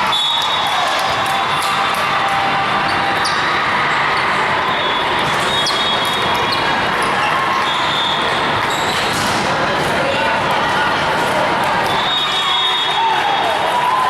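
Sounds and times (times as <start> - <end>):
volleyballs hit and bouncing: 0.0 - 12.2
din of many voices: 0.9 - 14.0
short high squeaks: 4.8 - 9.2.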